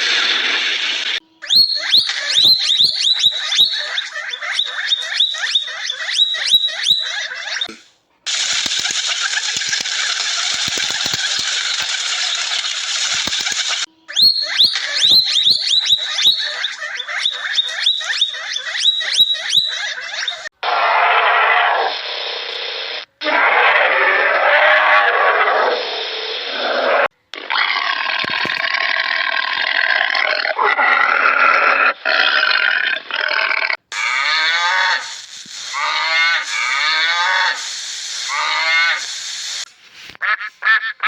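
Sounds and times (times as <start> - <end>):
small animal squeaking: 1.2 - 7.8, 8.6 - 20.5
steady hiss: 7.7 - 14.1, 34.0 - 40.2.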